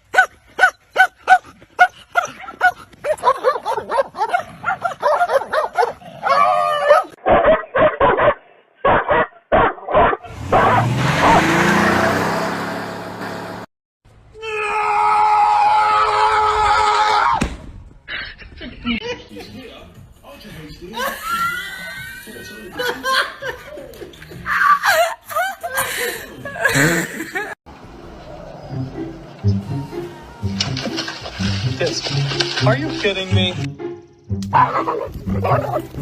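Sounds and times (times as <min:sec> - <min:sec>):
dog barking: 0:00.1 - 0:11.4, 0:34.5 - 0:35.9.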